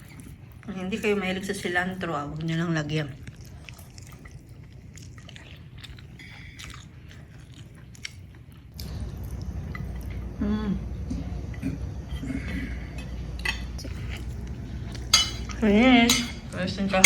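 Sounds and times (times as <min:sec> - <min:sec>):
person chewing food: 0:00.0 - 0:00.8, 0:02.3 - 0:10.4, 0:11.1 - 0:15.6.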